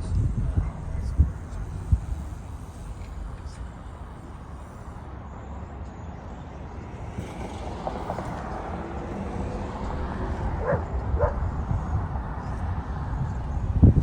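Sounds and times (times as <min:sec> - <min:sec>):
steady low rumble: 0:00.0 - 0:05.2, 0:08.0 - 0:14.0
dog barking: 0:10.6 - 0:11.5.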